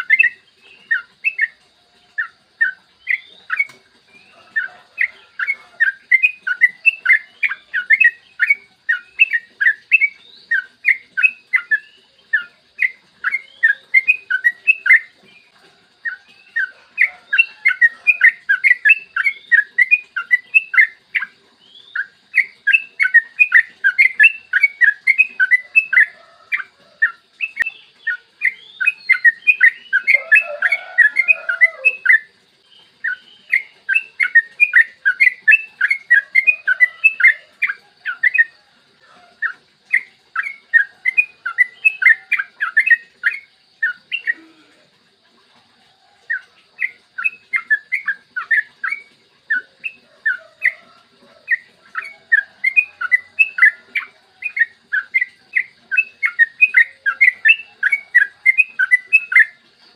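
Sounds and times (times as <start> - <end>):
bird bubbly chattering song: 0.0 - 59.9
lower bird call: 29.1 - 32.3.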